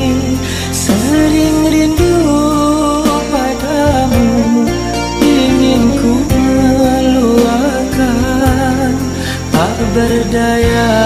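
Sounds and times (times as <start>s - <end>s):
song with sliding sung melody: 0.0s - 11.0s.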